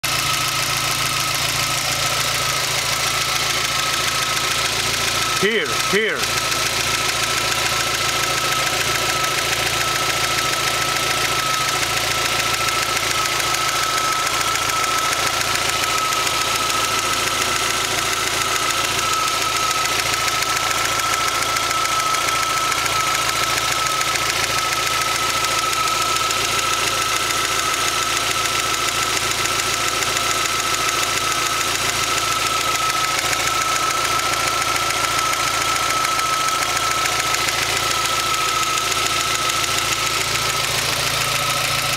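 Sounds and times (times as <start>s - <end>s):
car engine idling: 0.0s - 41.9s
steady high whine: 7.7s - 26.6s.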